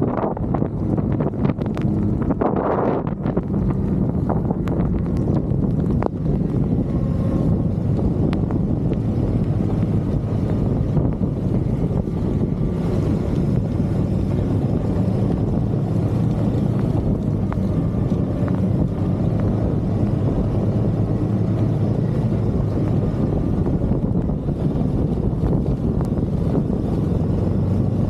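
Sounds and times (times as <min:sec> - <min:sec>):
snowmobile engine running: 0:00.0 - 0:28.0
wind noise on microphone: 0:00.0 - 0:28.0.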